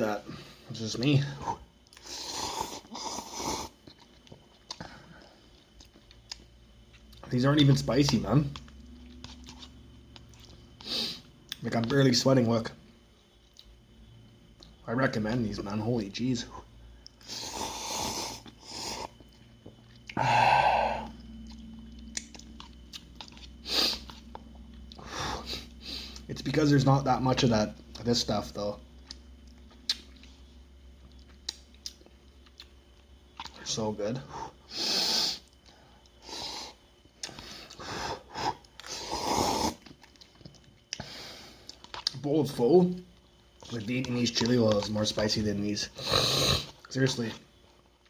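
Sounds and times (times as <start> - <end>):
person chewing noodles: 1.8 - 7.3, 8.0 - 11.9, 16.6 - 26.3, 28.9 - 30.4, 31.0 - 33.6, 34.4 - 42.2
breathing: 4.8 - 5.5, 20.2 - 21.1, 41.0 - 41.7
person eating noodles: 8.6 - 11.3, 17.2 - 26.2
breathy rush: 20.2 - 21.2.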